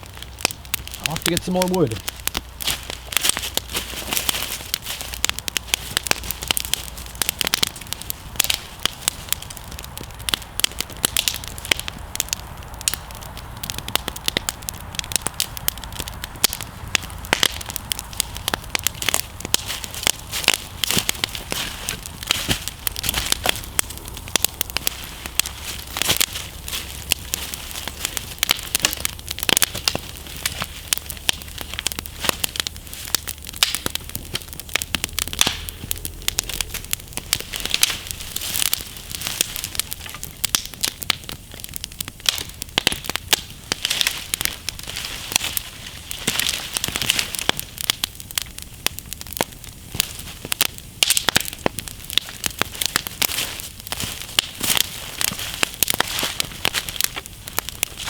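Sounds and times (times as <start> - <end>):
campfire crackling and popping: 0.0 - 58.0.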